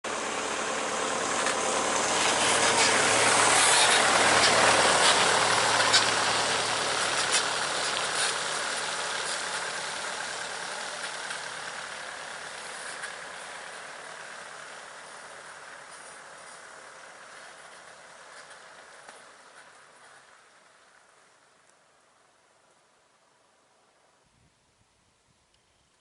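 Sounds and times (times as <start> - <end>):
vehicle passing: 0.1 - 10.1.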